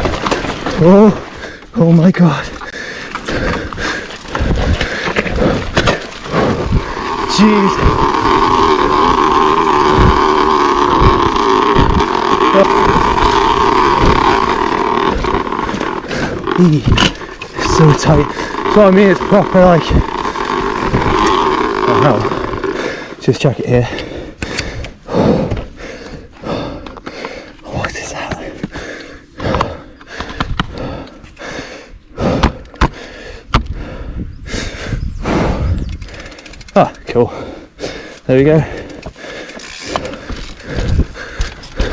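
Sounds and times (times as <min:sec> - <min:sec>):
bike knocks and clatters: 0:00.0 - 0:00.8
bicycle freehub buzzing: 0:02.6 - 0:27.4, 0:35.4 - 0:41.9
bike wheels thumping on bumps: 0:03.0 - 0:23.2, 0:39.9 - 0:41.9.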